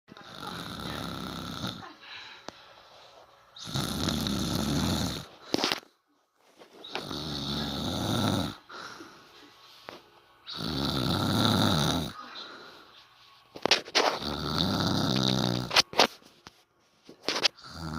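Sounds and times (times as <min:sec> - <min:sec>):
woman snoring loudly: 0:00.2 - 0:01.9, 0:03.6 - 0:05.3, 0:06.9 - 0:08.7, 0:10.5 - 0:12.2, 0:14.1 - 0:15.7, 0:17.6 - 0:17.9.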